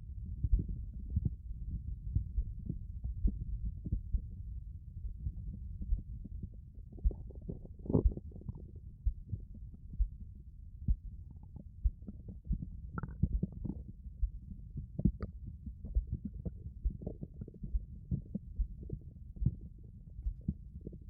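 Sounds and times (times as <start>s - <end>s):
stomach growling and gurgling: 5.2s - 9.9s, 11.3s - 21.0s.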